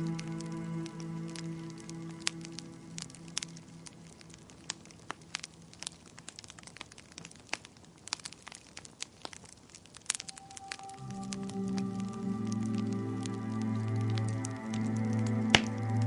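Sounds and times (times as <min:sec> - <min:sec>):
soft music: 0:00.0 - 0:05.0, 0:10.0 - 0:16.0
wood fire crackling: 0:00.0 - 0:16.0.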